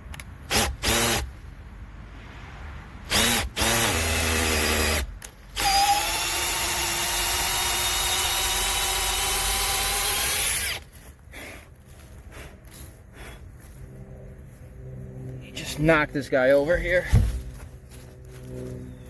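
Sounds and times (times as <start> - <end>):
hammer drill drilling: 0.5 - 1.2, 3.1 - 10.8.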